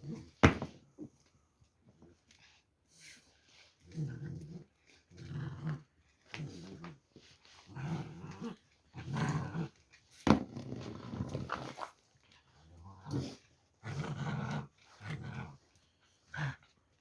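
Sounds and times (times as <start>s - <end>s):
puppy growling: 3.8s - 7.0s, 7.6s - 9.8s, 12.5s - 16.8s.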